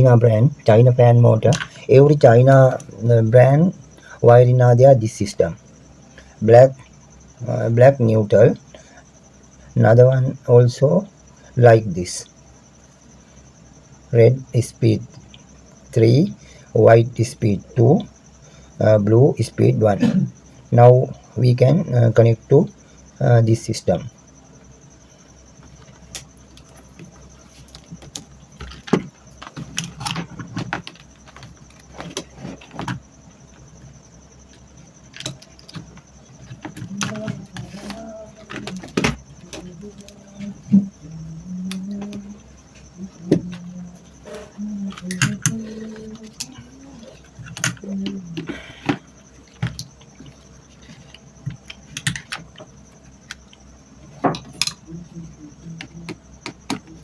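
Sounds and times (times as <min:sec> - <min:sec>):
clicks and taps of wiring: 0:48.4 - 0:53.6.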